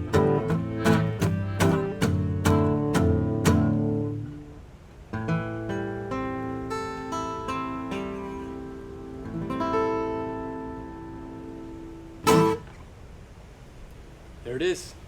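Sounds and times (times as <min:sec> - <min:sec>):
accordion holding chords: 0:00.0 - 0:03.8
acoustic guitar strumming: 0:00.0 - 0:12.9.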